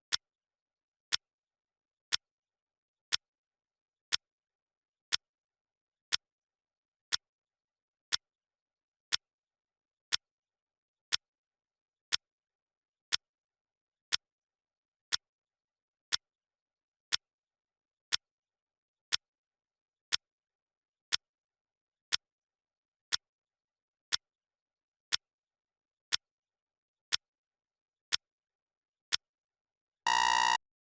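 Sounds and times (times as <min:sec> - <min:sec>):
clock ticking: 0:30.1 - 0:30.6.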